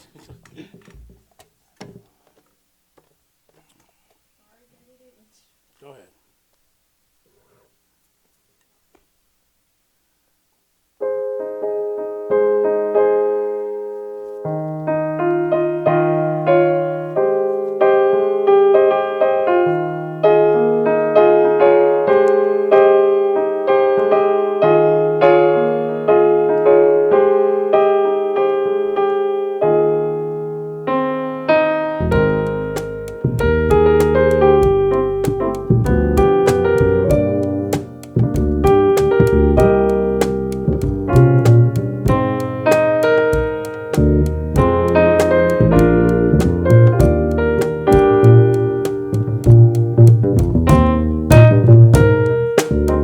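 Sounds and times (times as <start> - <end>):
jazz keyboard chords: 31.0 - 53.0
bass: 32.0 - 53.0.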